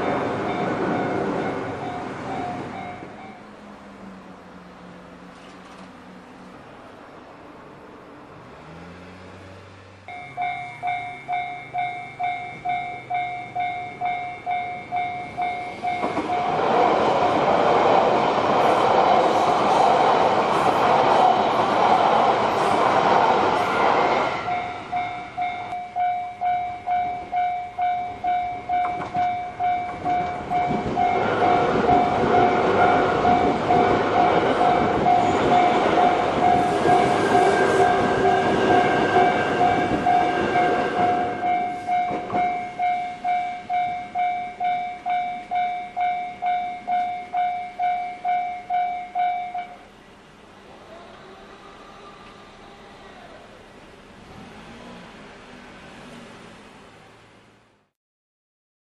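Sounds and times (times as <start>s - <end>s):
level-crossing alarm bell: 0.0s - 3.6s, 10.1s - 16.9s, 23.7s - 49.9s
train rumble: 0.0s - 57.6s.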